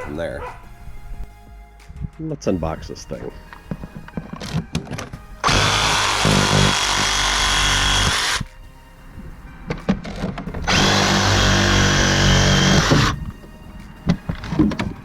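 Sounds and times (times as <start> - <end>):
power tool motor running: 5.4 - 8.4, 10.6 - 13.2.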